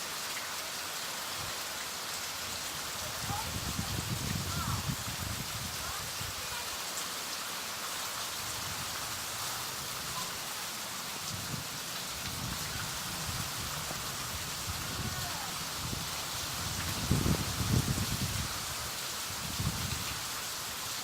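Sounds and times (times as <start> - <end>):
driving rain hissing: 0.0 - 21.0
wind gusts rumbling: 3.2 - 6.3, 11.2 - 20.2.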